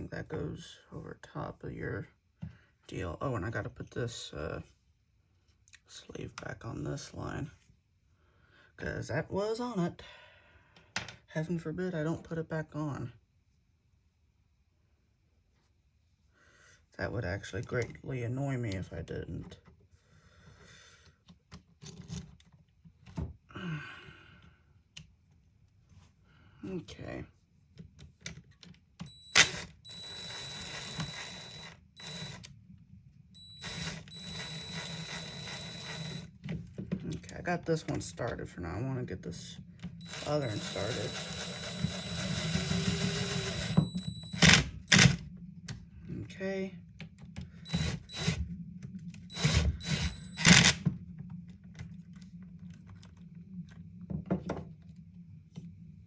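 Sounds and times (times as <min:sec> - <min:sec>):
steady low hum: 0:29.0 - 0:54.2
small motor tool whining: 0:29.1 - 0:32.5, 0:33.4 - 0:36.3, 0:39.9 - 0:45.2, 0:47.5 - 0:50.8.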